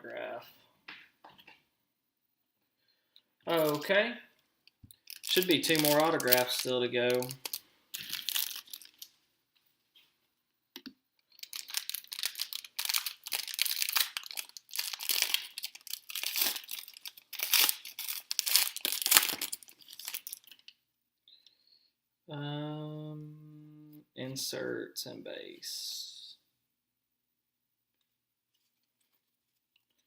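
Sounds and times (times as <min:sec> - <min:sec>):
wrapper torn open and crinkled: 0:05.0 - 0:09.1, 0:11.3 - 0:20.8.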